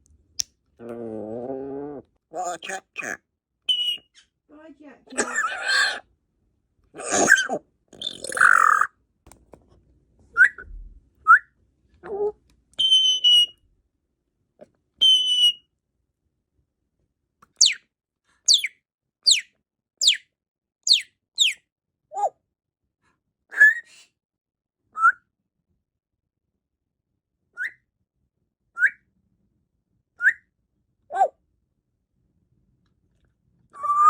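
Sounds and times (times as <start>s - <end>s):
parrot whistling: 3.7s - 4.2s, 10.4s - 10.7s, 12.8s - 13.5s, 15.0s - 15.6s, 17.6s - 17.8s, 18.5s - 18.7s, 20.9s - 21.6s.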